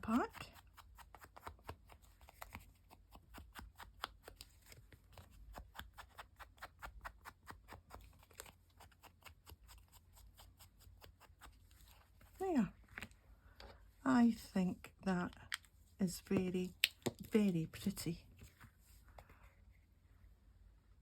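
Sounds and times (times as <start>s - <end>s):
ink pad tapping paper: 0.0s - 9.9s.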